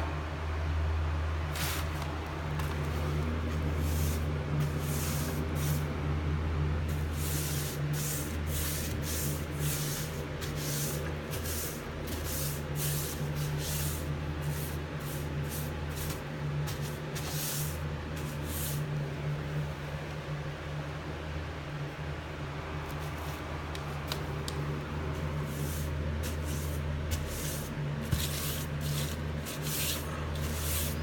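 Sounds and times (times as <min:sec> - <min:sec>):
paintbrush swishing on wood: 0:06.9 - 0:18.9, 0:25.2 - 0:31.0.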